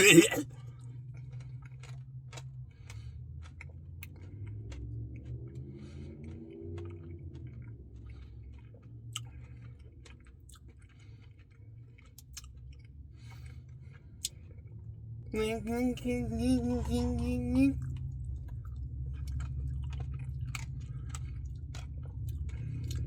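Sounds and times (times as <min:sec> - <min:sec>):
person chewing ice cream: 0:00.0 - 0:23.0
steady low hum: 0:11.0 - 0:23.0.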